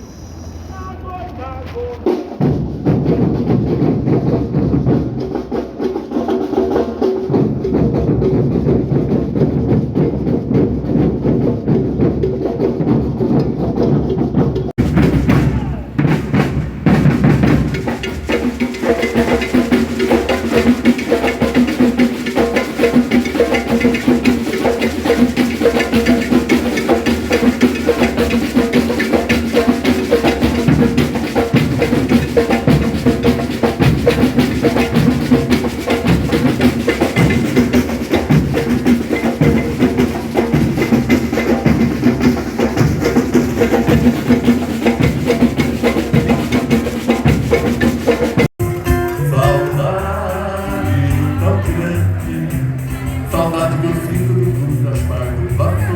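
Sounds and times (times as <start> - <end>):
snare drums: 0.8 - 55.9
clacking wood block beat: 12.2 - 55.9
deep bass drums: 48.6 - 55.9.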